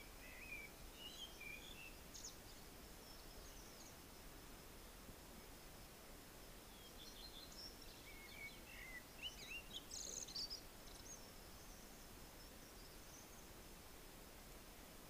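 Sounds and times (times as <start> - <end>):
songbird chirping and warbling: 0.0 - 4.0, 6.7 - 13.6
background hiss: 0.0 - 15.0.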